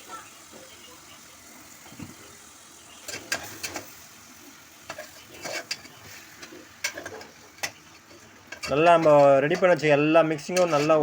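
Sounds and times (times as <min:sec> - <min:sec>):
oil sizzling: 0:00.0 - 0:11.0
utensil scraping metal pot: 0:03.0 - 0:04.0, 0:04.8 - 0:11.0.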